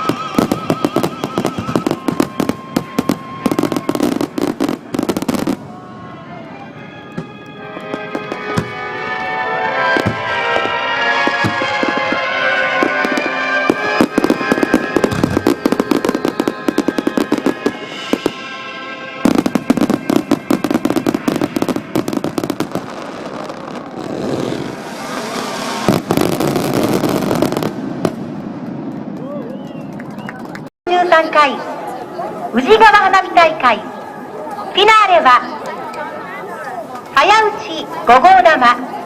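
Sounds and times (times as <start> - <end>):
fireworks bursting: 0.0 - 5.8, 7.2 - 30.0
fireworks crackling: 0.0 - 5.8, 7.7 - 30.7, 32.3 - 39.0
music over loudspeakers: 6.9 - 22.8.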